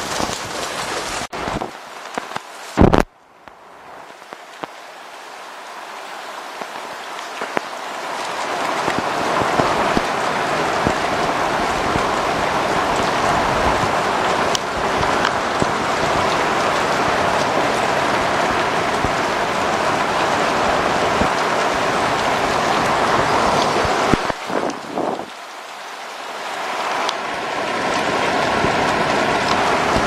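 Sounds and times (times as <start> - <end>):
rain downpour: 0.0 - 30.0
raindrops ticking on a surface: 0.0 - 30.0.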